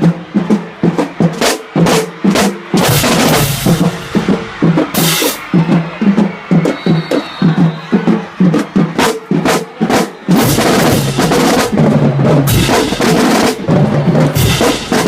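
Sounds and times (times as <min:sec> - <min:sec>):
bass and snare drums beating: 0:00.0 - 0:15.0.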